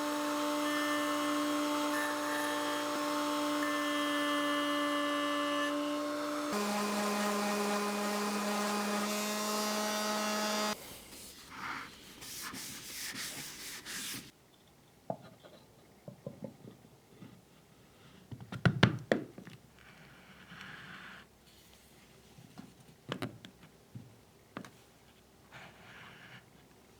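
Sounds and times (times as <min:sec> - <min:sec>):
electric power tool running: 0:00.0 - 0:10.8.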